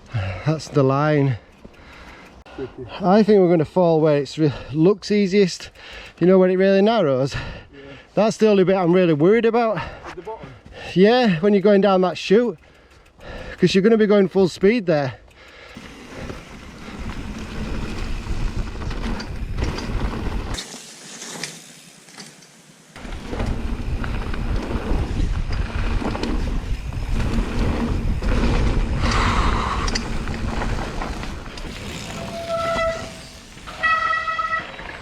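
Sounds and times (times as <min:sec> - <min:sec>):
bike tyres and frame rattling: 0:00.6 - 0:02.4, 0:09.8 - 0:35.0
wind buffeting: 0:15.8 - 0:20.6, 0:23.0 - 0:34.6
short high squeals: 0:31.7 - 0:35.0.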